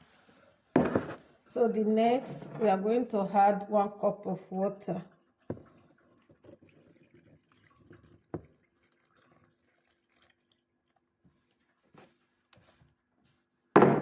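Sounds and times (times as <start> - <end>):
faint splashing and dripping: 4.9 - 12.8
water pouring into blender jar: 5.1 - 11.3.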